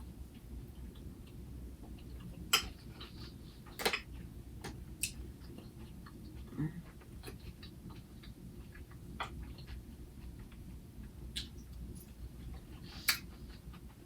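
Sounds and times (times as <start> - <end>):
crunchy chewing of salad: 5.0 - 14.0.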